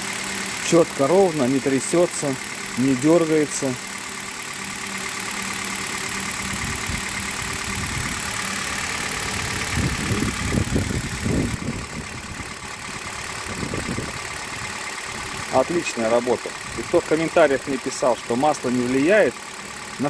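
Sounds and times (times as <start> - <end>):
car engine idling: 0.0 - 20.0
uneven low rumbling: 6.3 - 15.6.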